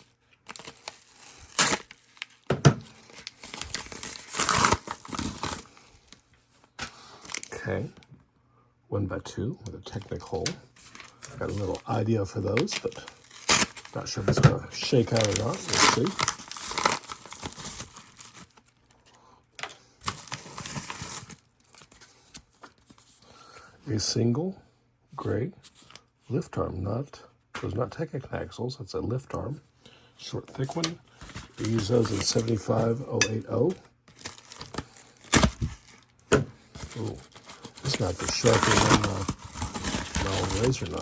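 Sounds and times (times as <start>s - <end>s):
packaging crinkling and rustling: 0.0s - 8.0s, 9.8s - 23.2s, 30.4s - 41.0s.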